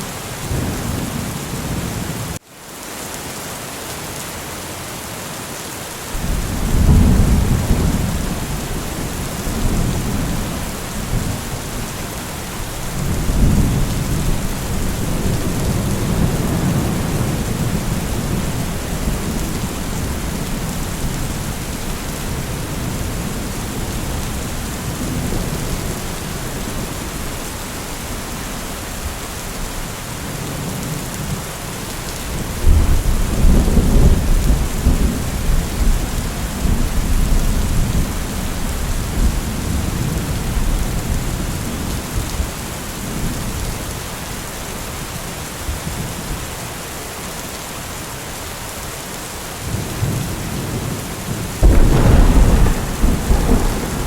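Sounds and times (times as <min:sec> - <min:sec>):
steady rain falling: 0:00.0 - 0:54.0
rolling thunder: 0:06.2 - 0:21.7, 0:32.4 - 0:42.5, 0:51.6 - 0:54.0.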